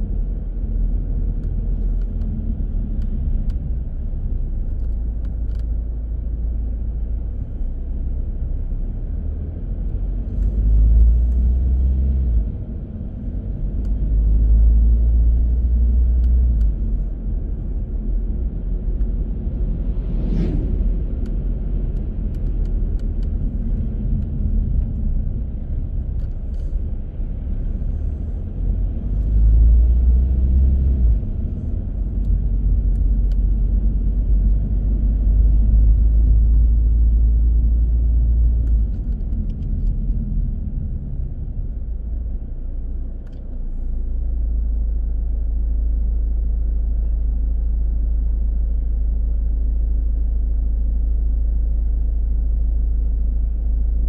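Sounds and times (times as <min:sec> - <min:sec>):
car road and engine rumble: 0:00.0 - 0:54.0.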